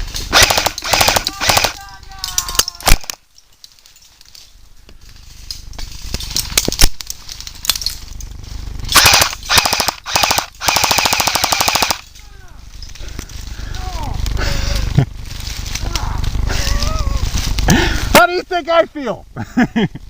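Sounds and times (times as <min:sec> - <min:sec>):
airsoft rifles firing: 0:00.3 - 0:03.2, 0:08.8 - 0:12.1.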